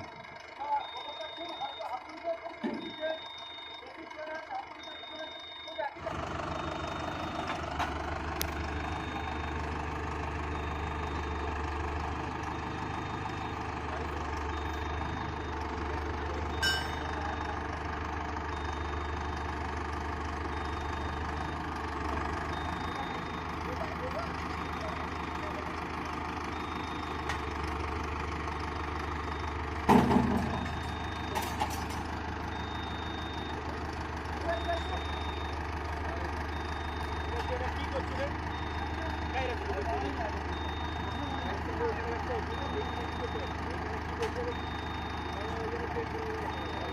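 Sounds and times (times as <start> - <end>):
heavy vehicle engine idling: 0.0 - 46.9
loud metallic clank and rattle: 29.8 - 32.0.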